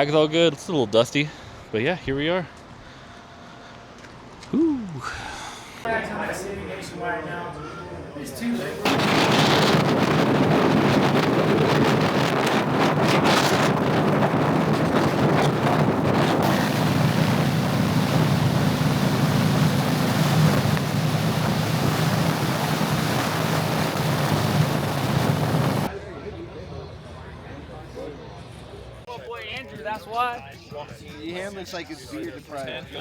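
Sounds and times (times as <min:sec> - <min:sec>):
wind buffeting microphone: 0:08.8 - 0:25.9
motorcycle engine running: 0:14.1 - 0:22.8.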